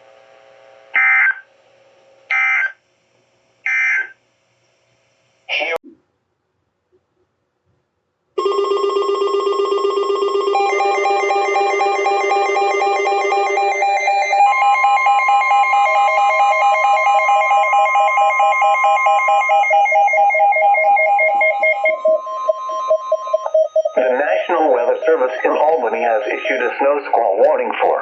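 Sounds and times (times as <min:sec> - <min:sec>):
pulsing electronic alert tones: 0:08.4 - 0:26.9.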